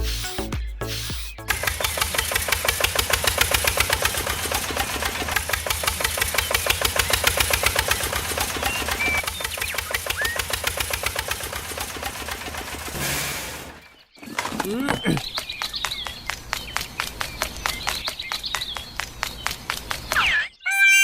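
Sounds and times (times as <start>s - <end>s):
small tractor engine knocking: 1.4s - 20.2s.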